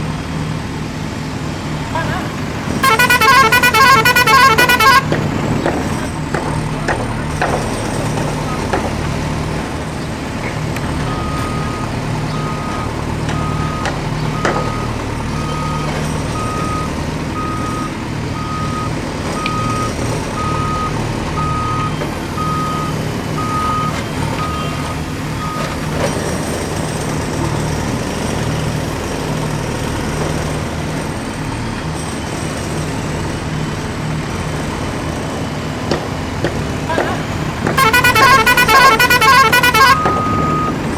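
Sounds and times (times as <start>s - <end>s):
reversing beeper: 2.8s - 5.1s, 11.1s - 25.7s, 37.8s - 40.8s.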